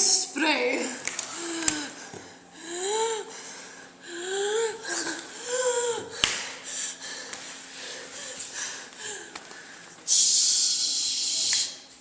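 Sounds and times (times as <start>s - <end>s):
person gasping and wheezing: 1.2s - 9.7s.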